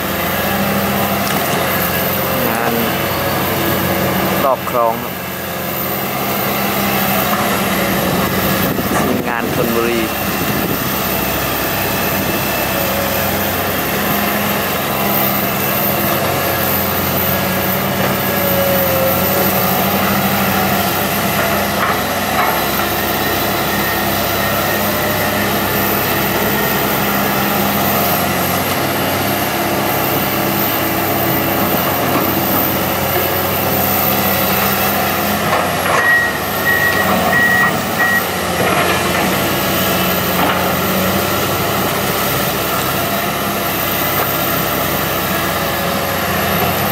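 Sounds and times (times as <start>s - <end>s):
excavator diesel engine running: 0.0s - 46.9s
quick high alarm beeps: 36.0s - 38.4s.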